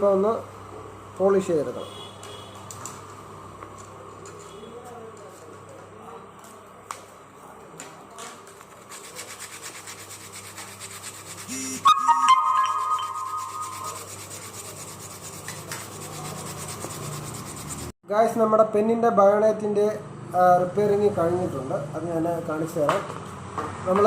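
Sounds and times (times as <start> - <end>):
abrasive rubbing: 8.9 - 17.9
loud high steady tone: 11.4 - 14.9.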